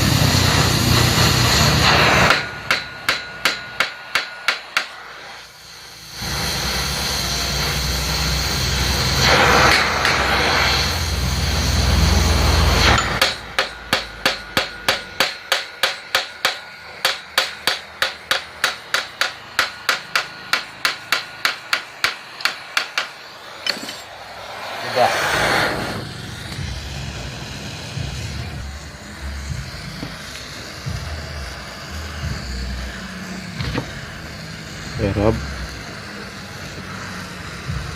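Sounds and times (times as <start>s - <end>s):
loud scraping rush: 0.0s - 15.2s, 22.3s - 29.9s
hammer tapping: 2.3s - 5.0s, 13.0s - 24.0s.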